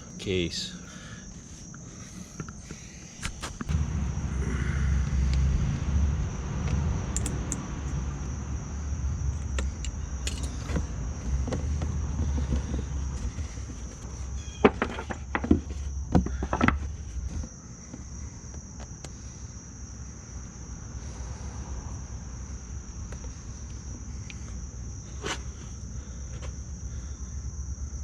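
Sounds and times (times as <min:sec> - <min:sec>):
constant high whine: 0:00.0 - 0:28.0
steady low hum: 0:00.0 - 0:28.0
clicks and knocks of fittings: 0:07.2 - 0:07.6, 0:09.6 - 0:16.9.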